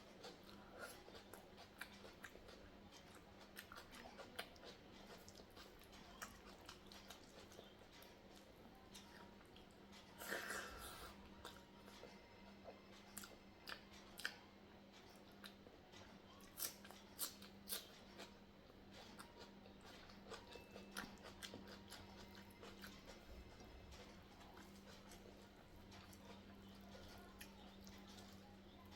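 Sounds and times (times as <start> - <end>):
faint hum: 0.0 - 28.9
food crunching: 0.1 - 14.4, 15.0 - 28.8
chewing with wet mouth clicks: 0.2 - 28.9.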